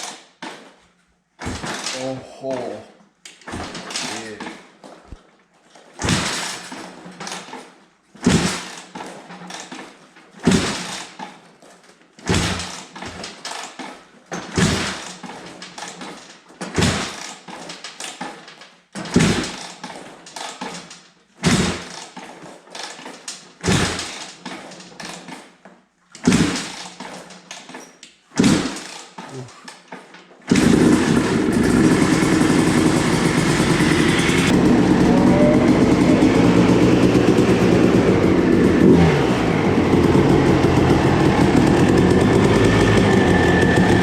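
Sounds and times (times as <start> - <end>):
two-stroke engine bursts: 30.5 - 44.0.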